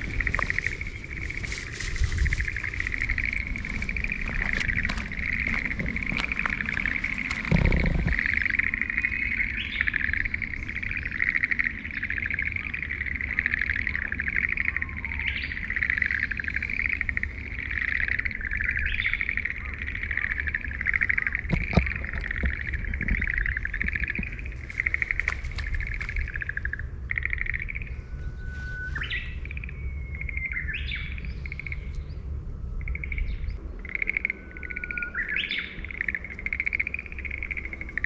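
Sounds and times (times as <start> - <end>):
chorus of pulsing animal trills: 0.0 - 38.0
low rumble: 0.0 - 38.0.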